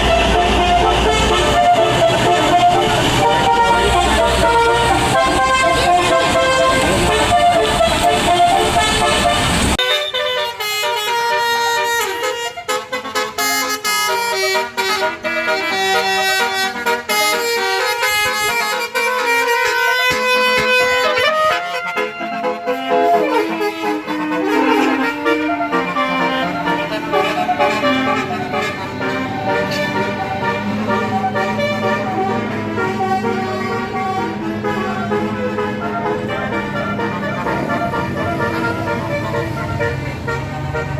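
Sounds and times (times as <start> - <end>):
horn tones: 0.0 - 40.9
vehicle noise: 0.0 - 40.9.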